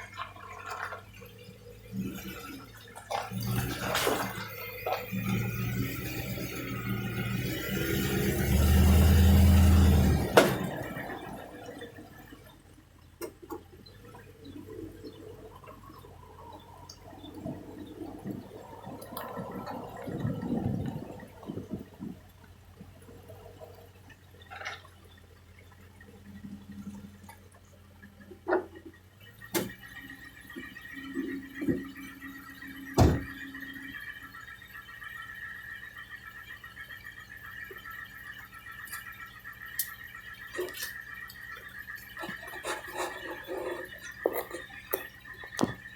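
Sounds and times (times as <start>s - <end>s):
low hum: 0.0s - 45.9s
air suspension popping: 8.0s - 34.9s, 37.4s - 45.9s
steady high whine: 29.2s - 45.9s.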